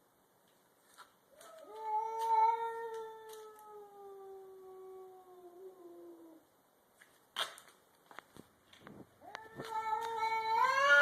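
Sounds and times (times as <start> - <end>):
cat yowling: 9.3 - 11.0.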